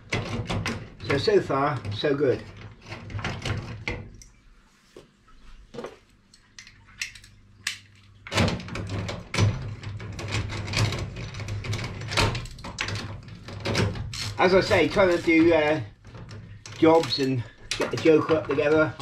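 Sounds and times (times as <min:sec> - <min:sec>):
metal parts knocking and clicking: 0:07.0 - 0:15.5.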